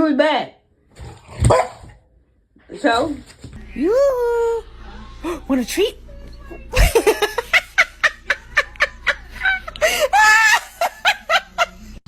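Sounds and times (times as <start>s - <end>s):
person laughing hard: 6.8s - 11.9s.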